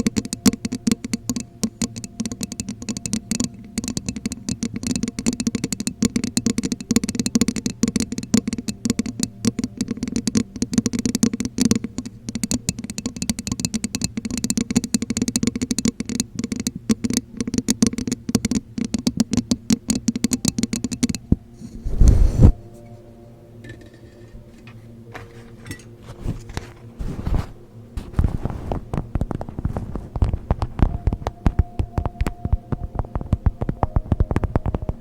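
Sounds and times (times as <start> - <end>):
fingers tapping hollow object: 0.0 - 22.6, 28.9 - 35.0.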